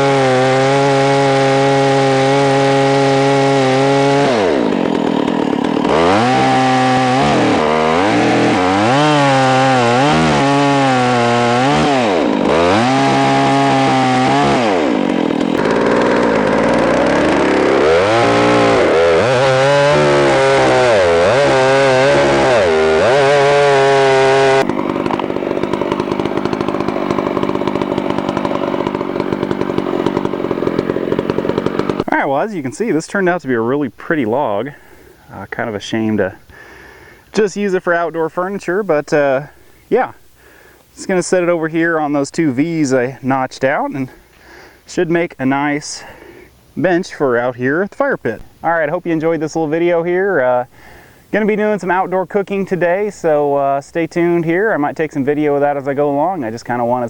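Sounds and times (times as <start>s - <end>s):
chainsaw ripping a log: 0.0s - 33.4s.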